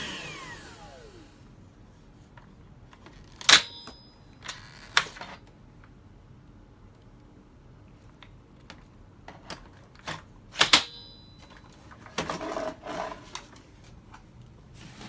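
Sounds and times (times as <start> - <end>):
scraping or rustling: 12.0 - 13.6, 14.8 - 15.0.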